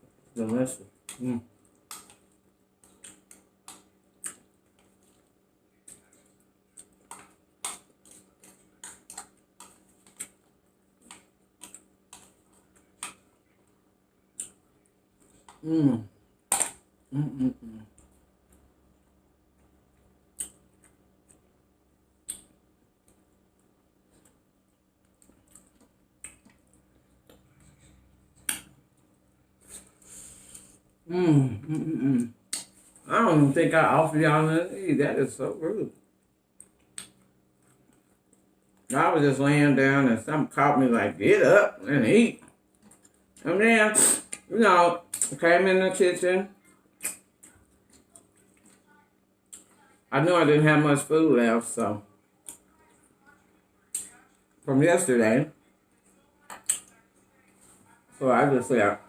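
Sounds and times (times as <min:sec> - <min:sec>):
person chewing: 0:00.9 - 0:33.1, 0:36.5 - 0:38.9, 0:45.1 - 0:45.4, 0:46.9 - 0:48.8
lip smacks and clicks: 0:01.0 - 0:05.2, 0:05.8 - 0:13.3, 0:14.3 - 0:14.6, 0:20.3 - 0:21.5, 0:22.2 - 0:24.4, 0:25.0 - 0:27.7, 0:31.7 - 0:33.0, 0:36.6 - 0:39.0, 0:45.1 - 0:45.4, 0:47.0 - 0:48.8, 0:52.4 - 0:52.7, 0:53.9 - 0:54.2, 0:56.5 - 0:57.0.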